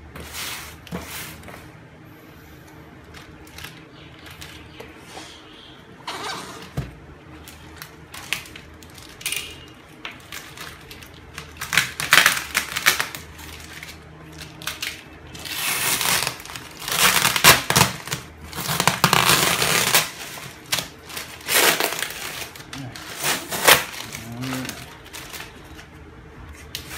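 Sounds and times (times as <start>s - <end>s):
packaging rustling and crinkling: 6.2s - 25.9s.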